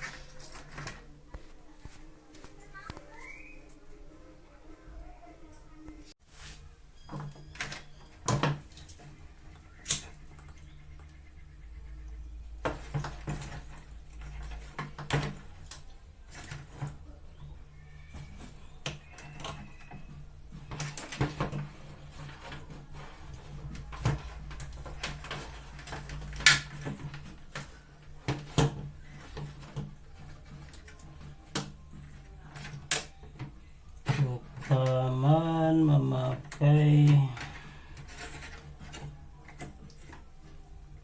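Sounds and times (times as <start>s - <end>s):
tools clicking and tapping on wires: 7.1s - 11.1s, 18.1s - 35.3s, 36.2s - 40.7s.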